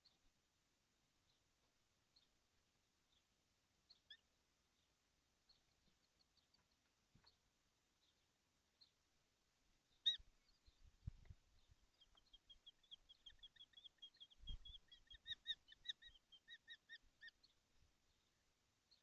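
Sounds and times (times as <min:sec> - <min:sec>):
kestrel calling: 0:09.9 - 0:10.8, 0:11.9 - 0:17.6.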